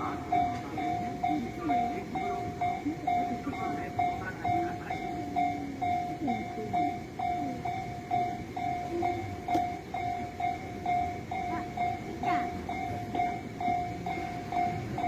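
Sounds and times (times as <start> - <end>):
level crossing alarm ringing: 0.0 - 15.0
train running: 0.0 - 15.0.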